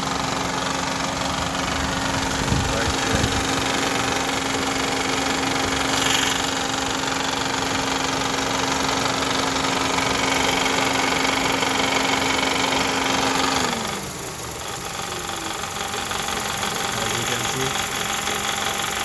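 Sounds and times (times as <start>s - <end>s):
car engine idling with rattle: 0.0s - 19.0s.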